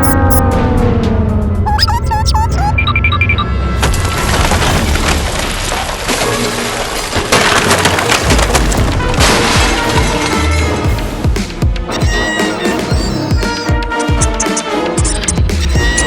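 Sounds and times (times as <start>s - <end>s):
dense crackling and splintering: 3.8s - 10.9s
background music: 7.9s - 16.0s.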